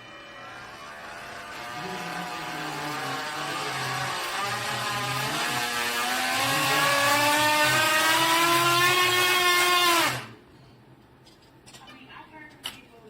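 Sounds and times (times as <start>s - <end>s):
electric motor whining: 0.0s - 10.4s.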